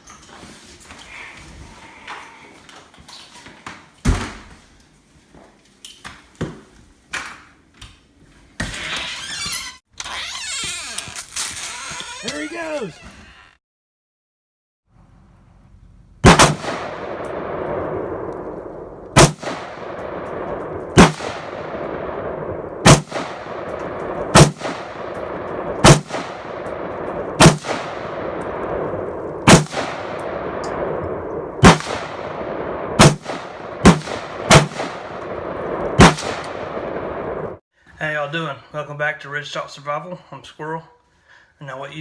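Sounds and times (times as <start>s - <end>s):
rifle shots: 16.2s - 37.6s
rolling echo: 16.3s - 37.6s.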